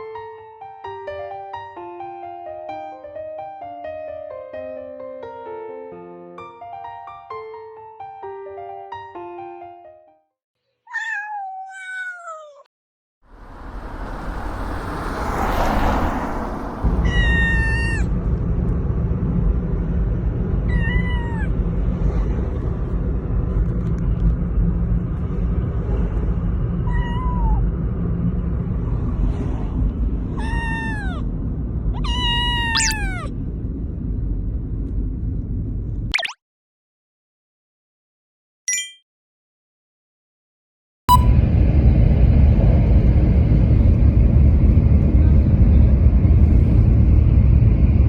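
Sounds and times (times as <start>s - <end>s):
kitten meowing: 10.9s - 12.7s, 17.0s - 18.1s, 20.7s - 21.5s, 26.9s - 27.6s, 30.3s - 31.2s, 32.0s - 33.3s
steady low rumble: 13.3s - 30.4s, 31.2s - 36.1s, 41.1s - 48.0s.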